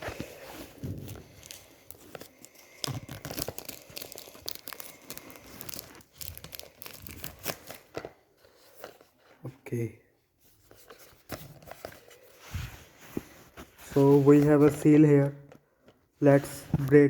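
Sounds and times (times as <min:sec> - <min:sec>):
packaging tearing and crinkling: 0:00.0 - 0:08.2.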